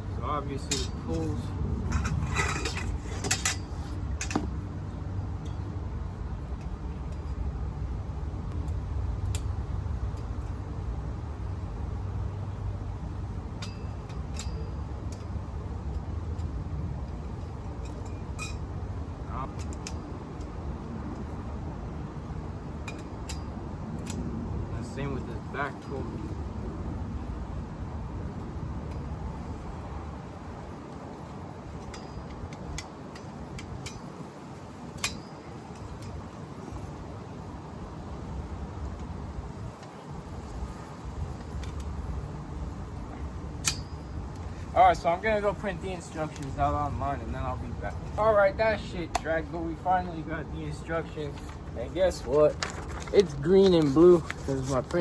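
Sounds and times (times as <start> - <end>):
steady low rumble: 0.0 - 32.8.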